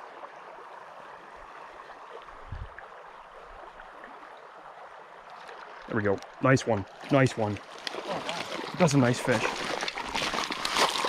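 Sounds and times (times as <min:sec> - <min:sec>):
creek water rushing: 0:00.0 - 0:11.0.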